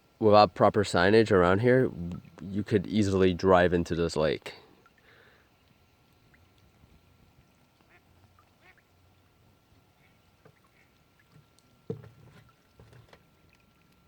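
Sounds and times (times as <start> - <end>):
ducks quacking faintly: 4.9 - 9.0.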